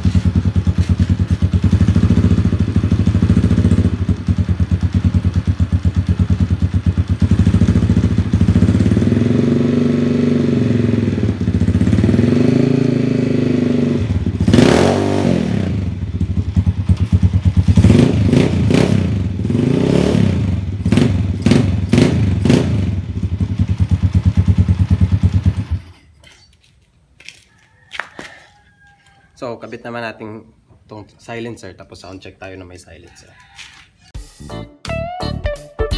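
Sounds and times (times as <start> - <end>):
motorcycle engine idling and revving: 0.0 - 26.2.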